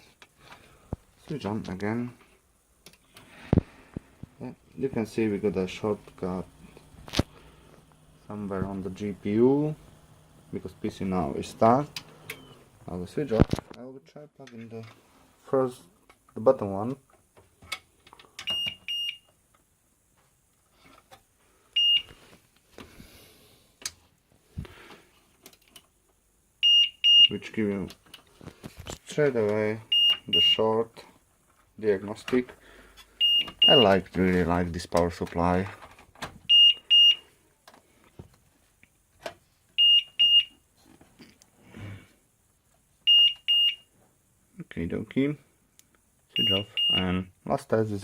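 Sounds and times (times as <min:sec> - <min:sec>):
power supply alarm beeping: 0:12.2 - 0:12.7, 0:18.5 - 0:19.3, 0:21.8 - 0:22.1, 0:26.6 - 0:27.5, 0:29.9 - 0:30.7, 0:33.2 - 0:34.1, 0:36.5 - 0:37.2, 0:39.8 - 0:40.6, 0:43.0 - 0:43.9, 0:46.3 - 0:47.2.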